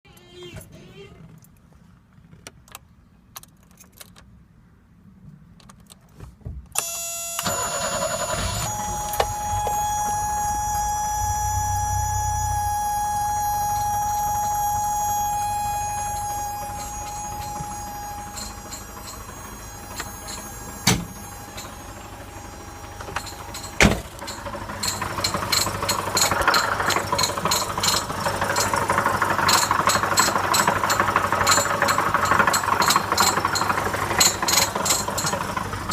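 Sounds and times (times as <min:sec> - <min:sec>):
car engine starting and running: 0:06.8 - 0:35.9
rapid high-pitched engine ticking: 0:09.8 - 0:35.9.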